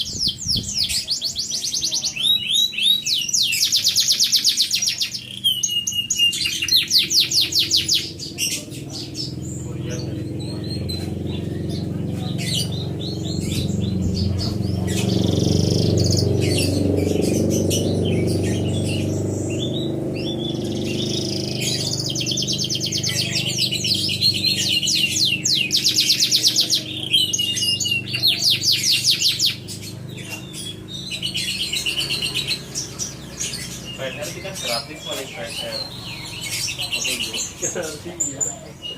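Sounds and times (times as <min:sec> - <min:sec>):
canary singing: 0:00.0 - 0:38.9
low steady rumble: 0:07.4 - 0:36.9.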